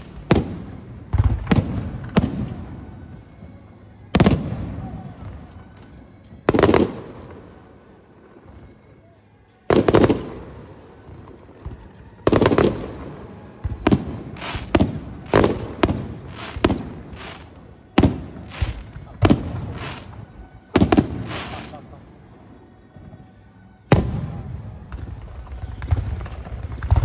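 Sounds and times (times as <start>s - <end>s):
firework shells bursting: 14.3s - 20.1s.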